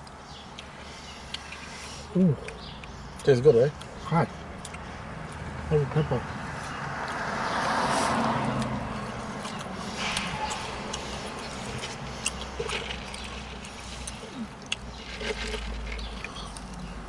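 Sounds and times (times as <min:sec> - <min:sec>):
small mouth clicks: 0:00.0 - 0:03.9, 0:04.6 - 0:05.5, 0:09.4 - 0:12.8
chewing fried chicken: 0:00.0 - 0:05.6, 0:06.7 - 0:17.0.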